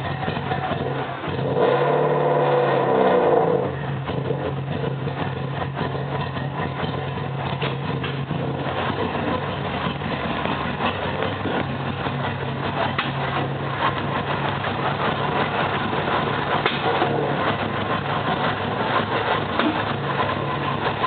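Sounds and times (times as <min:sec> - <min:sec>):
car engine idling: 0:00.0 - 0:21.0.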